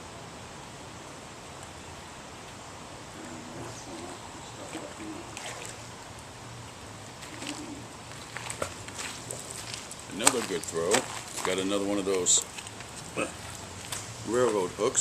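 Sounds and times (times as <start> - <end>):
faint distant voices: 3.1 - 5.9.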